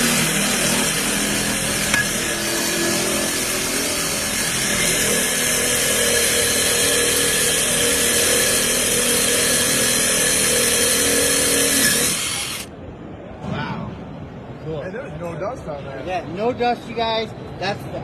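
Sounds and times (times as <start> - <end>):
power drill boring: 0.0 - 12.7.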